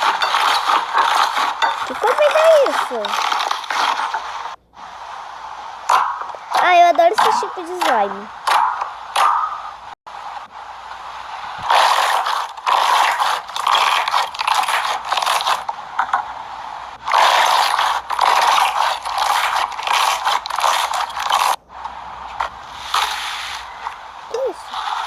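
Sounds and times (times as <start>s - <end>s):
slime crackling and squishing: 17.1s - 21.6s.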